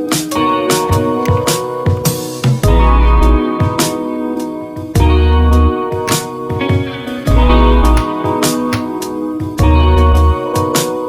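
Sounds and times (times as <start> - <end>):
background music with beat: 0.0 - 11.0
deep bass note: 7.3 - 8.0.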